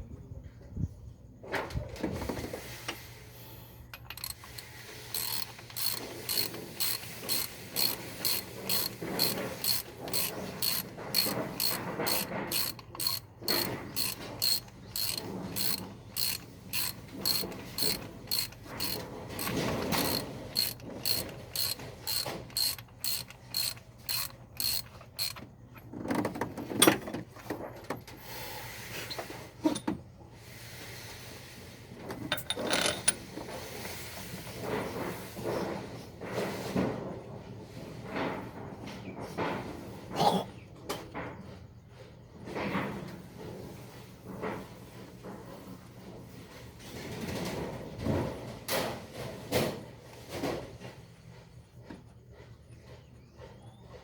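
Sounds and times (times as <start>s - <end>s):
ratchet wrench clicking: 4.0s - 25.4s
metal tools knocking: 4.0s - 25.5s, 32.3s - 33.2s.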